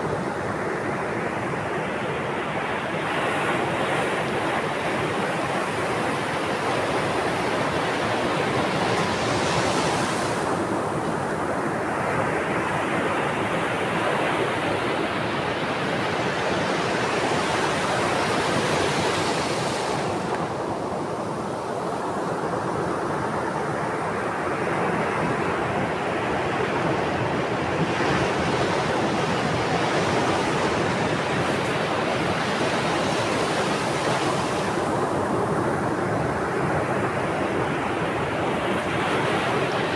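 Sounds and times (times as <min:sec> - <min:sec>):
ocean waves breaking: 0:26.6 - 0:39.9.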